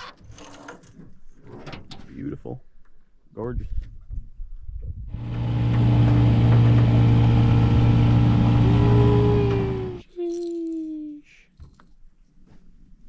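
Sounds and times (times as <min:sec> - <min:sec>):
engine running steadily: 0:05.1 - 0:10.0
short falling whine: 0:05.2 - 0:10.0.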